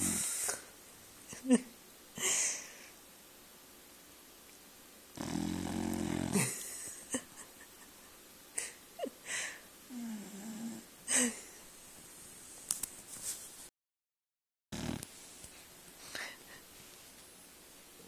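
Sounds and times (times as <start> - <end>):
wheezy snorts: 0.0 - 0.6, 5.2 - 6.6, 14.8 - 15.1
pet snoring: 5.2 - 6.5, 9.9 - 10.9, 14.8 - 15.1.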